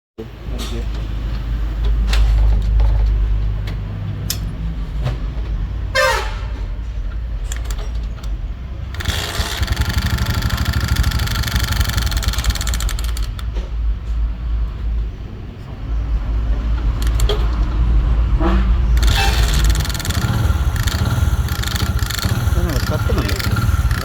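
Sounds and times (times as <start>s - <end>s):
motorcycle engine rumbling: 0.5s - 24.0s
fast rattling clatter: 8.9s - 13.5s, 17.0s - 17.5s, 19.0s - 24.0s.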